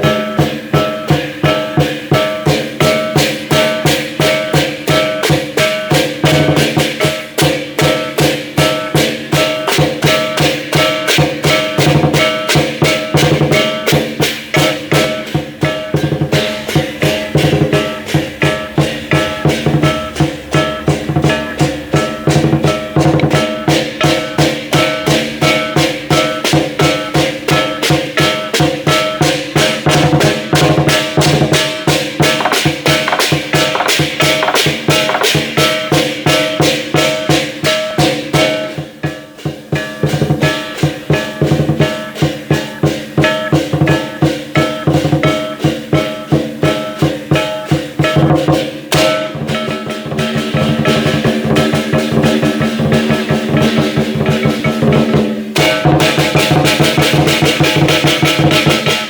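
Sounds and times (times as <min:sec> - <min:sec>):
cymbals crashing: 0:00.0 - 0:59.0
drum beating: 0:00.0 - 0:59.0
gong strikes: 0:10.2 - 0:37.3, 0:47.4 - 0:59.0.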